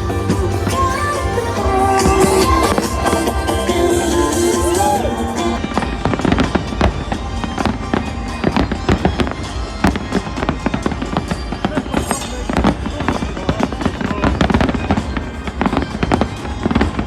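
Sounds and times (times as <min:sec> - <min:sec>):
music playing: 0:00.0 - 0:17.0
fireworks bangs and crackles: 0:05.6 - 0:17.0.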